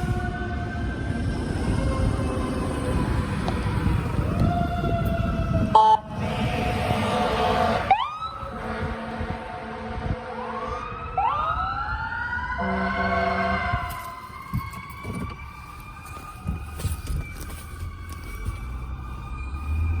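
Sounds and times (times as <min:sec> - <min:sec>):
emergency sirens wailing: 0:00.0 - 0:20.0
loud horn blast: 0:05.8 - 0:10.7, 0:12.6 - 0:13.9.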